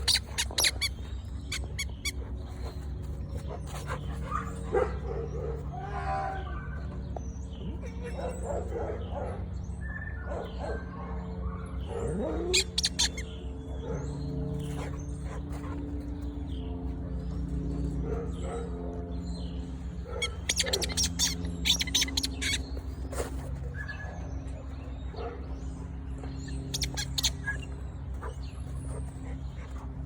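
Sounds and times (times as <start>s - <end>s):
squeaky toy squeaking: 0.0s - 2.1s, 12.5s - 13.2s, 20.2s - 22.7s, 26.7s - 27.6s.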